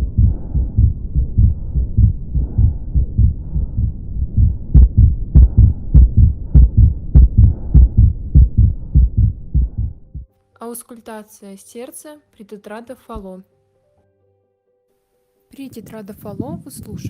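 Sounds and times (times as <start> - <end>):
heartbeats: 0.0 - 10.3, 15.8 - 17.0
soft heart murmur: 0.0 - 10.3, 15.8 - 17.0.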